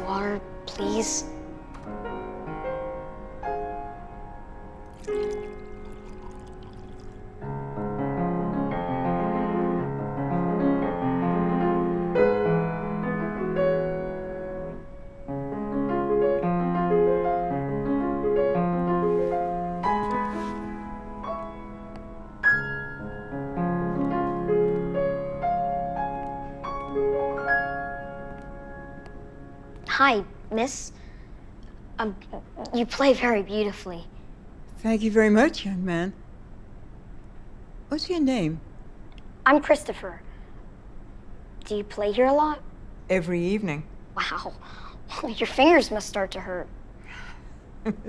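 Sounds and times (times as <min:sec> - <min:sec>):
solo piano melody: 0:00.0 - 0:29.9.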